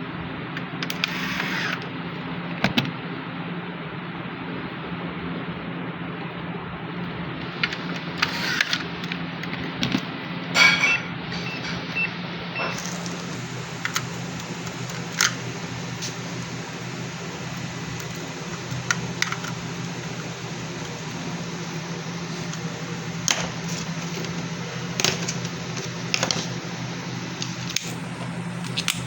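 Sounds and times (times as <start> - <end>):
low electrical hum: 0.0 - 29.0
short high beeps: 10.6 - 12.8.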